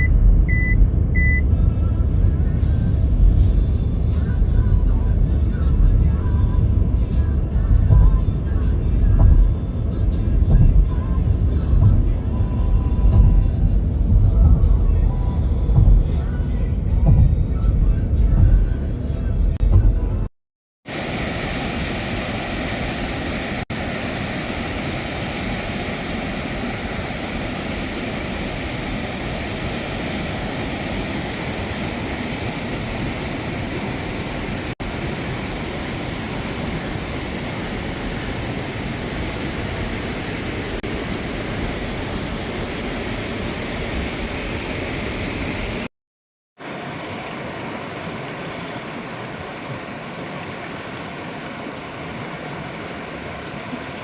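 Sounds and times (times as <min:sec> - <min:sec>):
river water rushing over waterfall: 0:20.9 - 0:45.9, 0:46.6 - 0:54.0.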